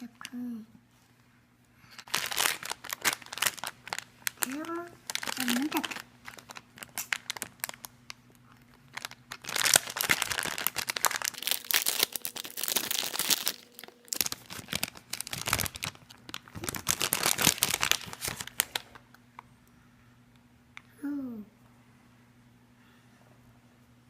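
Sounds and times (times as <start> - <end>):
plastic wrapper crinkling and tearing: 1.9 - 19.1.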